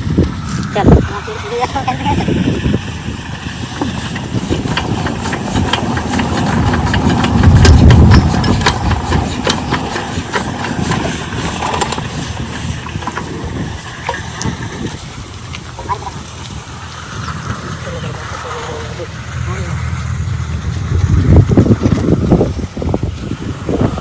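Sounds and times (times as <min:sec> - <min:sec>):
diesel engine chugging and knocking: 0:00.0 - 0:15.2, 0:15.8 - 0:24.0.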